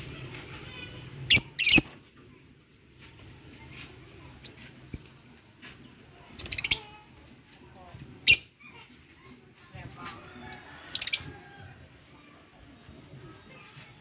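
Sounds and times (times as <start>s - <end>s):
lovebirds shrill chirps: 1.3s - 1.9s, 6.3s - 6.8s, 8.2s - 8.5s.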